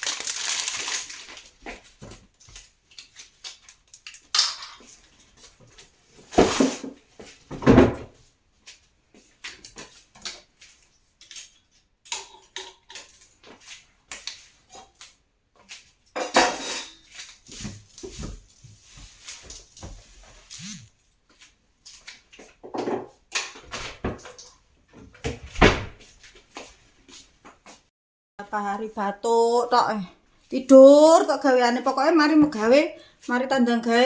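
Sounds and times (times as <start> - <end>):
kitchenware clinking and clattering: 3.0 - 5.4, 11.2 - 13.4, 16.1 - 17.4.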